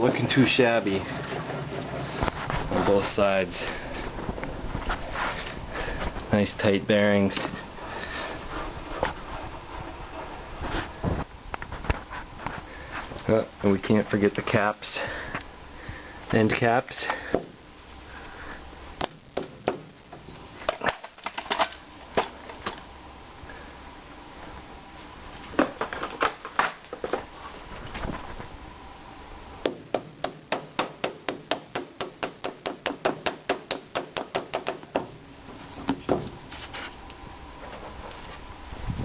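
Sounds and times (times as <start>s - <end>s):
knocks and taps on end caps: 29.6s - 35.1s.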